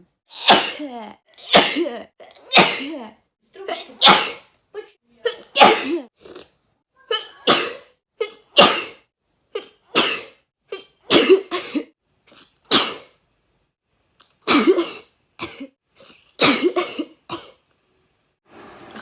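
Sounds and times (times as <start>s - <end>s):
person sneezing: 0.4s - 3.0s, 3.7s - 4.5s, 5.3s - 6.4s, 7.1s - 9.0s.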